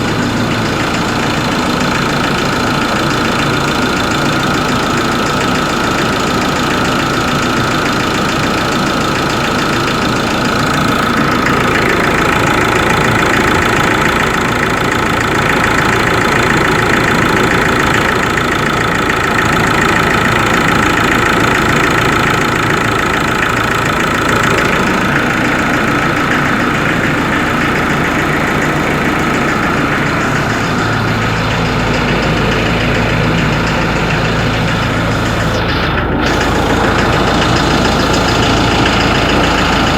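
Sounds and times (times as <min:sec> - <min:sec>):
diesel engine idling: 0:00.0 - 0:39.9
deep hum: 0:18.9 - 0:39.9
steady high tone: 0:24.1 - 0:39.9.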